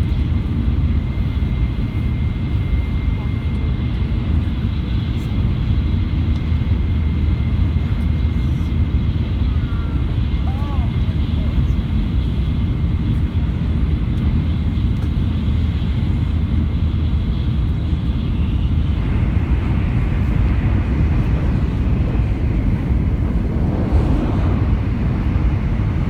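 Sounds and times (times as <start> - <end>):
bullet train rumbling: 20.0 - 26.0.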